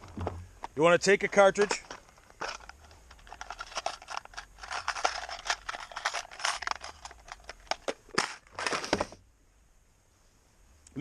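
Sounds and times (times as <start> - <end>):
metal rifle parts clicking: 1.3 - 8.9.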